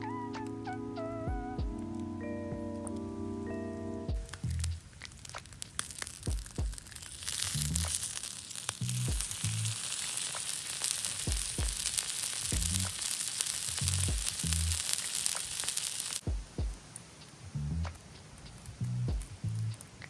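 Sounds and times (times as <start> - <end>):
background music with low notes: 0.0 - 4.9
food sizzling in a pan: 4.1 - 20.0.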